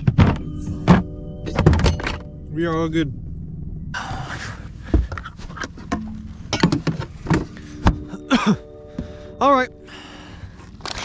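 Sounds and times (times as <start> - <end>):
low steady rumble: 0.0 - 7.4.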